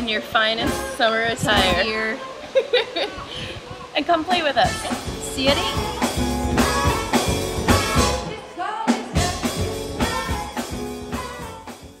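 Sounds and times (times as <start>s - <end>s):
band music with drums and guitar: 4.3s - 12.0s
person singing: 4.6s - 12.0s.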